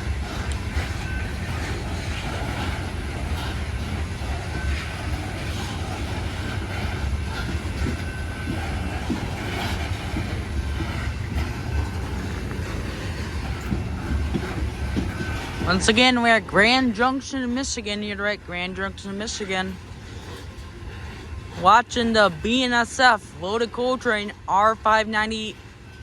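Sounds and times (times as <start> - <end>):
faint wheel squeals: 0.0 - 18.2
freight train rumbling past: 0.0 - 26.0
wheels clicking over rail joints: 0.0 - 26.0.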